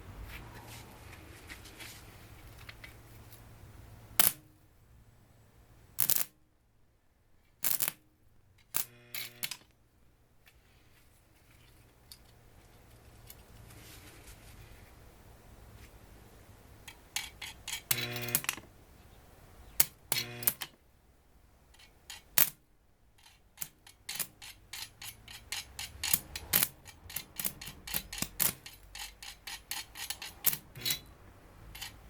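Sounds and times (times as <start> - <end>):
welder arc crackling: 4.1 - 4.4, 6.0 - 6.4, 7.6 - 8.0, 8.7 - 9.6, 16.9 - 18.6, 19.8 - 20.7, 23.6 - 31.0
welder low hum: 6.0 - 6.2, 7.6 - 7.9, 8.7 - 9.6, 20.1 - 20.6
buzzing mains hum: 8.7 - 9.8, 17.6 - 20.8.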